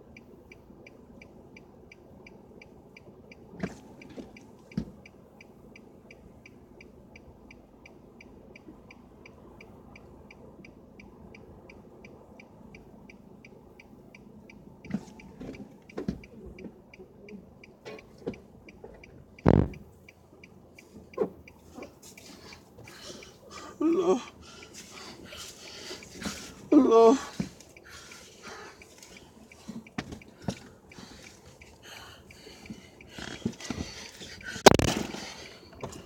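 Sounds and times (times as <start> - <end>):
dashboard ticking: 0.1 - 36.0
knocks and bumps: 19.4 - 19.8, 34.6 - 35.4
loud thump: 19.5 - 19.8.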